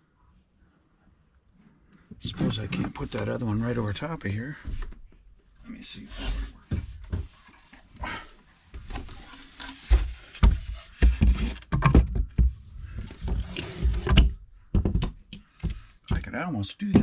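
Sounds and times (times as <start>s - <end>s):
wooden shelf knocks and thumps: 9.8s - 17.0s.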